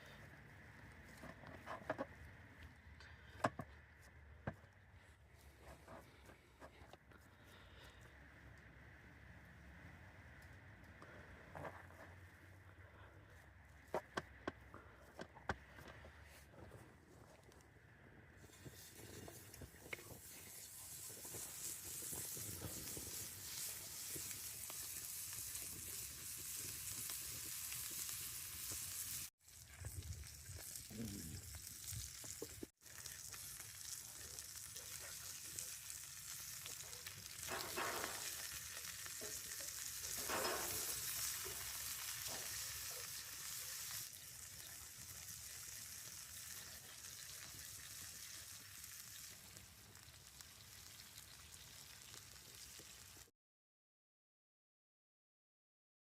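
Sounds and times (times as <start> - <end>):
burger patties sizzling in pan: 18.4 - 53.3.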